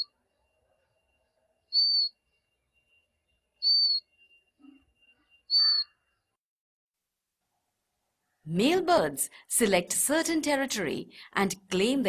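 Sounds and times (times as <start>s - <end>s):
chick's high whistled begging call: 1.7s - 2.1s, 3.6s - 4.0s, 5.5s - 5.9s.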